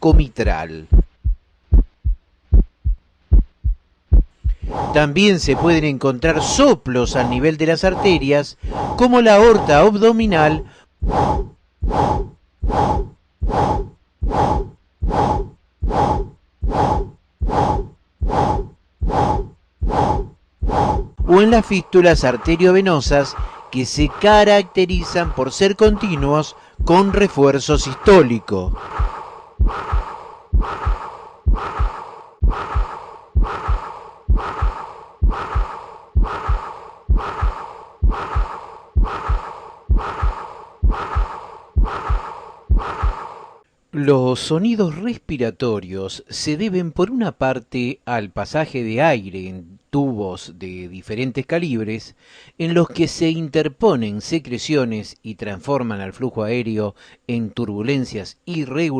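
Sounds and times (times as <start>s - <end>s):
whooshing heartbeat murmur: 0.1s - 6.6s, 11.0s - 43.3s.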